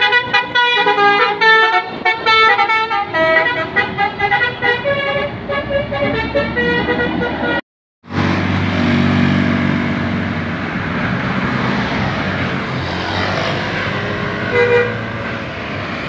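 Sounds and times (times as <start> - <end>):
multi-tone musical bus horn: 0.0 - 7.6, 13.7 - 15.4
road noise: 0.0 - 16.0.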